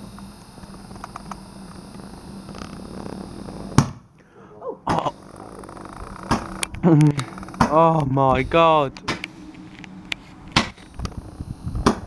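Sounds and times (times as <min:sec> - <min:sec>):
fireworks fizzing hiss: 0:00.0 - 0:04.4, 0:05.0 - 0:12.0
firework bang: 0:03.7 - 0:04.1, 0:04.9 - 0:09.6.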